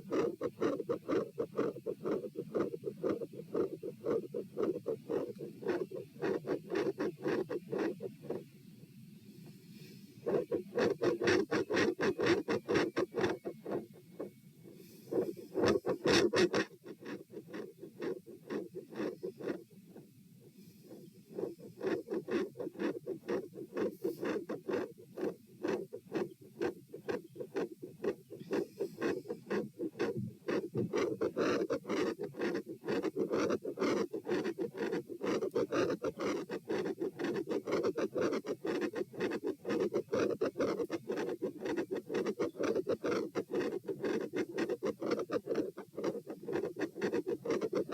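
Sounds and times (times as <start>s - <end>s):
stethoscope rubbing on chest: 0.0s - 8.4s, 9.8s - 20.1s, 20.7s - 47.9s
heartbeat through stethoscope: 29.0s - 31.0s.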